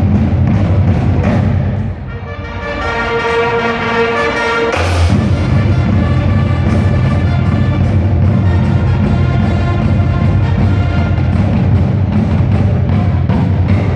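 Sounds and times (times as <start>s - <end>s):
music with heavy bass beat: 4.8s - 13.9s.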